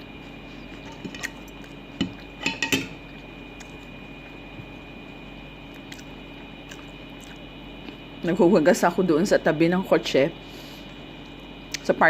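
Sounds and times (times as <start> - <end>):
cutlery clinking on a plate: 2.4 - 3.0.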